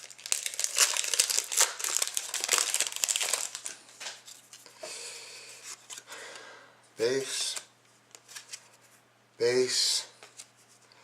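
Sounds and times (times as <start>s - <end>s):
wrapper tearing and crinkling: 0.0s - 4.2s.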